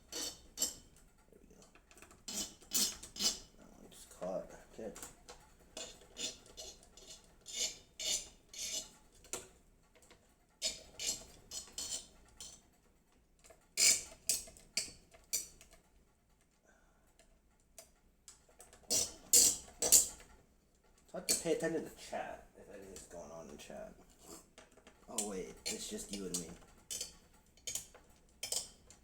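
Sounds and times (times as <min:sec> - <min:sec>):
screwdriver clicking and scraping: 0:00.0 - 0:03.5, 0:05.0 - 0:12.6, 0:13.4 - 0:15.9, 0:17.2 - 0:20.3, 0:24.0 - 0:29.0.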